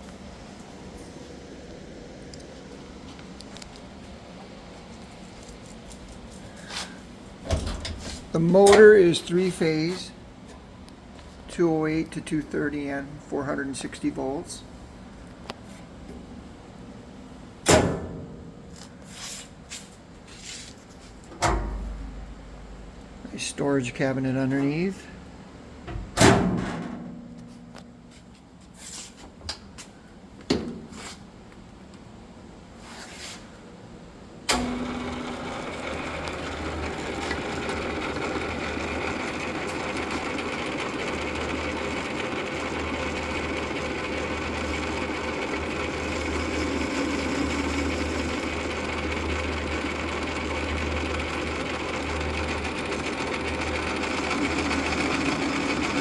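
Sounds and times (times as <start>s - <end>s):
lathe switch click: 34.5s - 36.6s
lathe motor humming: 34.5s - 56.0s.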